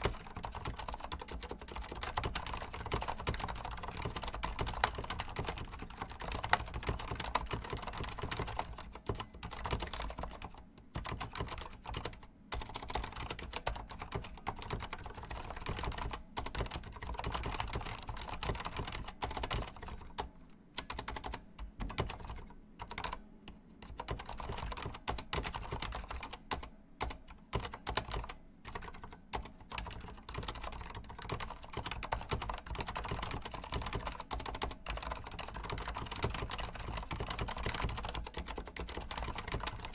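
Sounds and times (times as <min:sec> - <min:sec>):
mechanical keyboard typing: 0:00.0 - 0:23.2, 0:23.8 - 0:39.9.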